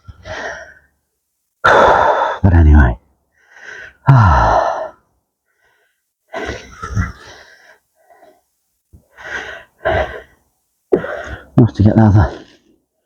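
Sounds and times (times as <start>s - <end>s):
man breathing heavily: 1.6s - 2.4s, 3.3s - 11.6s
man sighing: 4.0s - 5.0s.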